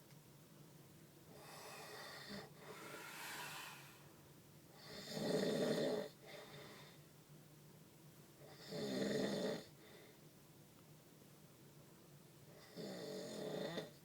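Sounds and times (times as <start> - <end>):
soft breathing: 1.4 - 4.2
man snoring: 1.5 - 4.0.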